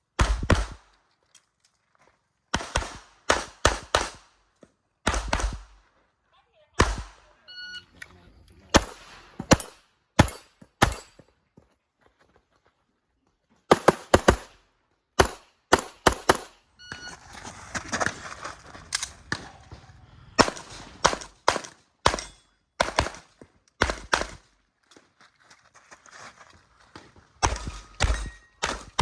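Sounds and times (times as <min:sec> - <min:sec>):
pistol shots: 0:00.2 - 0:00.9, 0:02.5 - 0:04.3, 0:05.0 - 0:05.8, 0:06.8 - 0:07.2, 0:08.7 - 0:11.2, 0:13.7 - 0:14.6, 0:15.2 - 0:16.6, 0:20.4 - 0:24.5
rustling and movement: 0:17.0 - 0:21.4, 0:24.7 - 0:29.0.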